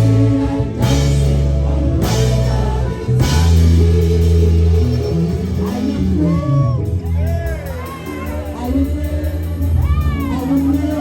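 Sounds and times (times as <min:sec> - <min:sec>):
church band playing: 0:00.0 - 0:11.0
heavy bass line: 0:00.0 - 0:11.0.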